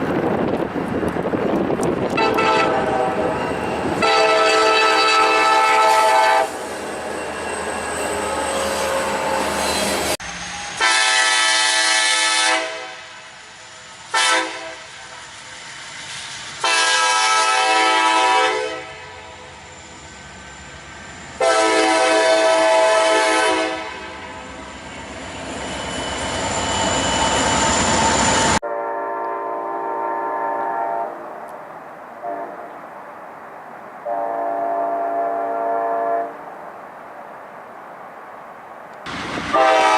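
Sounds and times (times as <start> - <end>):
locomotive horn blasts: 2.1 - 3.4, 4.0 - 6.6, 10.8 - 13.2, 14.1 - 14.9, 16.6 - 19.3, 21.4 - 24.3, 28.6 - 31.2, 32.2 - 32.8, 34.0 - 36.4, 39.5 - 39.9.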